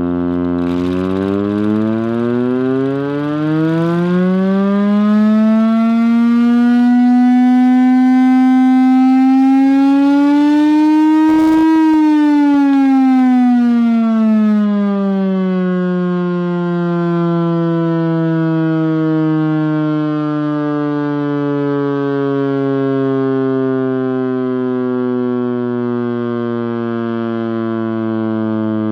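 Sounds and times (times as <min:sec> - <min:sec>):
air raid siren wailing: 0:00.0 - 0:28.9.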